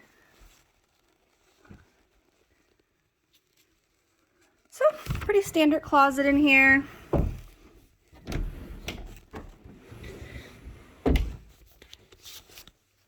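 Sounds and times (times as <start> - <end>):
closet door knocks and thuds: 5.0 - 5.6, 6.3 - 11.6.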